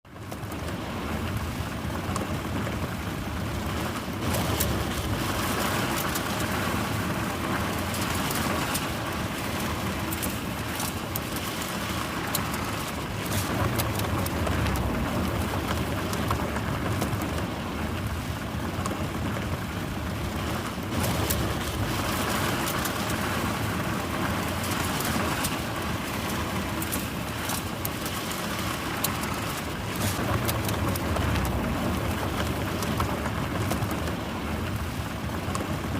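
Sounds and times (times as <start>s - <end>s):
car rumbling: 0.5s - 35.9s.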